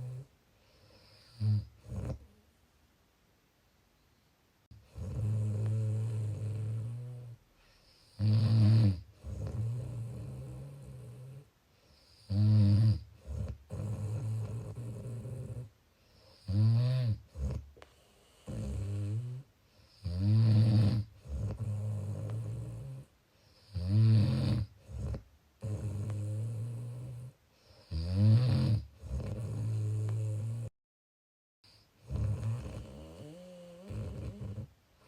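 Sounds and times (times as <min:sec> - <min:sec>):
person snoring: 0:00.0 - 0:00.3, 0:01.0 - 0:02.2, 0:04.9 - 0:07.4, 0:08.0 - 0:11.5, 0:12.1 - 0:15.7, 0:18.4 - 0:30.7, 0:31.7 - 0:34.7.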